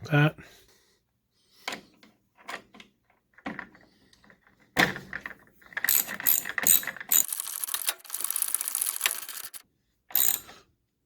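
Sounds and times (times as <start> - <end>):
socket ratchet clicking: 5.9 - 10.5.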